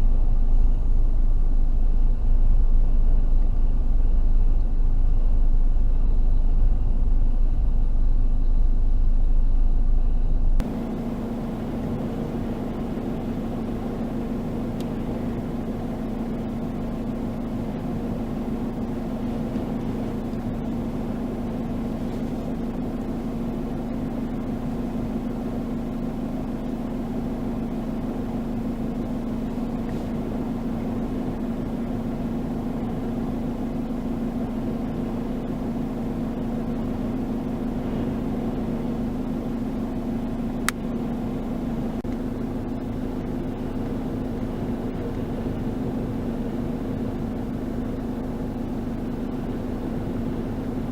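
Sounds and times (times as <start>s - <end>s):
constant low hum: 0.0s - 50.9s.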